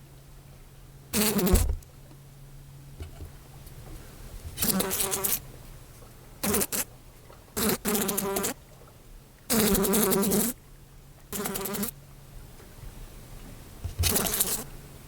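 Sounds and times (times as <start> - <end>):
fly buzzing against window: 1.2 - 1.8, 4.6 - 5.4, 11.4 - 11.9, 13.9 - 14.7.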